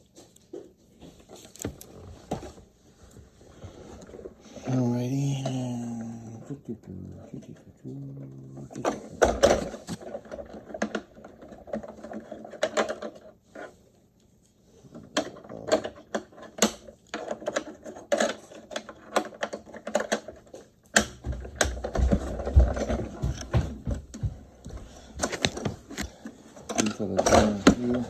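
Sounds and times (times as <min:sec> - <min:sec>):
plastic parts clicking and knocking: 0:08.6 - 0:13.7, 0:14.8 - 0:24.4, 0:25.1 - 0:28.0.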